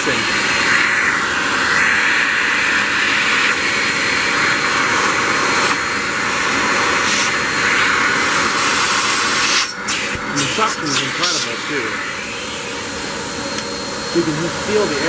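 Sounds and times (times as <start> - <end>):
upright vacuum running: 0.0 - 15.0.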